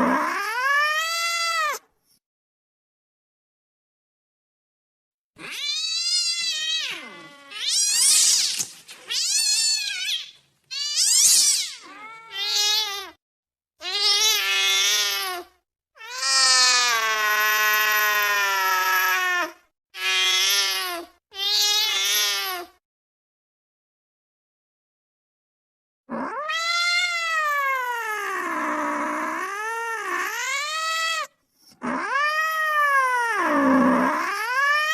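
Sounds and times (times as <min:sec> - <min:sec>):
cat yowling: 0:00.0 - 0:01.8, 0:05.4 - 0:08.4, 0:09.1 - 0:13.2, 0:13.8 - 0:22.7, 0:26.1 - 0:34.9.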